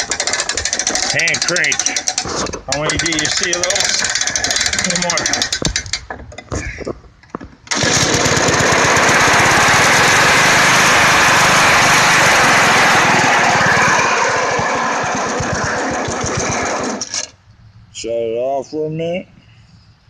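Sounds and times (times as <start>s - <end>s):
lawnmower engine running: 0.0s - 6.0s, 7.7s - 17.3s.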